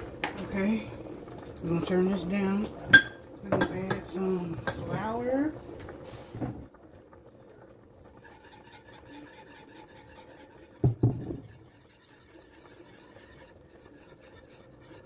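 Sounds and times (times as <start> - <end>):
spoon scraping in cooking pot: 8.0 - 15.0.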